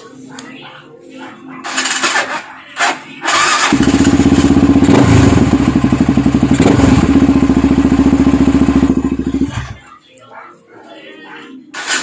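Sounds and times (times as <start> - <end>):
motorcycle engine running: 1.6 - 9.8.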